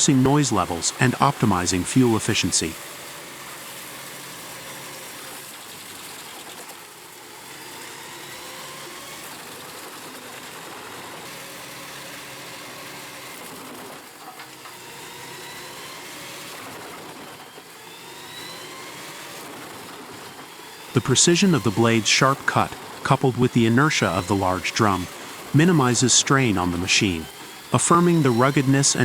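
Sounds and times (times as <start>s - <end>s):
wood chipper running: 2.7s - 20.9s, 24.9s - 25.6s.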